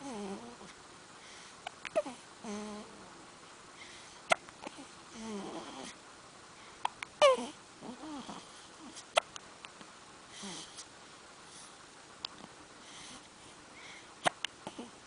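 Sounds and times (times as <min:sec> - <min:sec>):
baby hiccupping: 0:06.8 - 0:07.6
baby babbling: 0:07.2 - 0:07.6.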